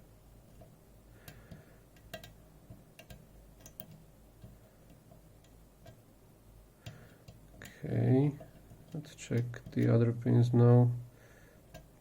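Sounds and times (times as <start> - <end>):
lock pick ticks and clicks: 1.3 - 6.0, 11.7 - 12.0.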